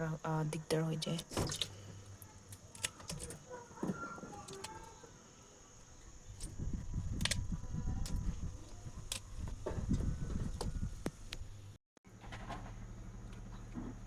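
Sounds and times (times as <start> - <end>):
high insect drone: 0.0 - 11.0.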